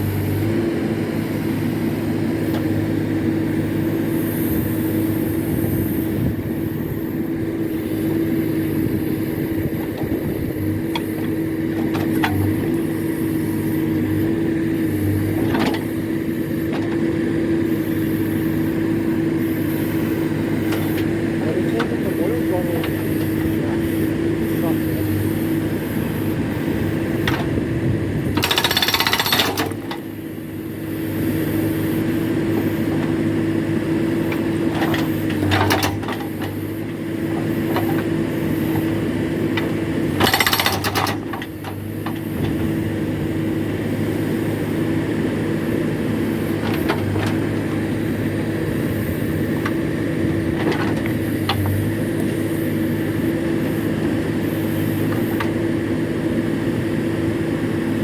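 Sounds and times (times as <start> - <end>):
backhoe engine running: 0.0 - 58.0
hydraulic rock breaker hammering: 9.1 - 14.2, 19.6 - 30.2, 34.2 - 43.1.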